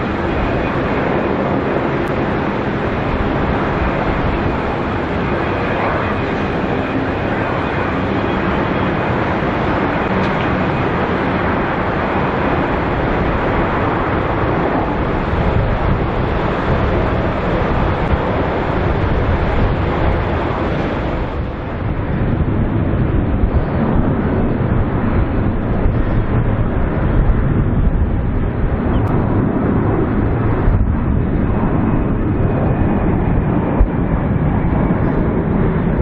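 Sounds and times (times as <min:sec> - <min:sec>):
jet engine roar: 0:00.0 - 0:36.0
low rumble of airliner: 0:00.0 - 0:36.0.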